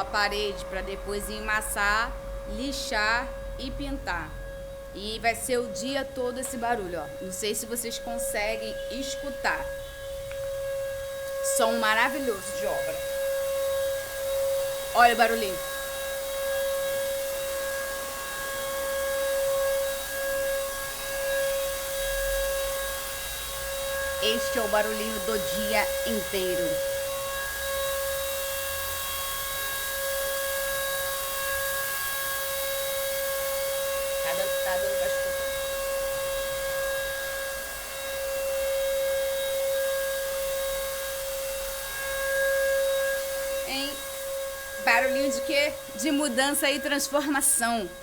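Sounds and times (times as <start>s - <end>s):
power tool motor whine: 4.4s - 48.0s.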